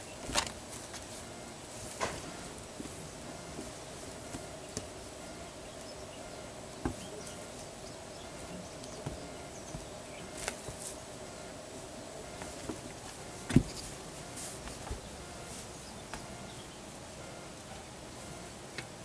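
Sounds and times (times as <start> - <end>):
steady hum: 0.0 - 19.0.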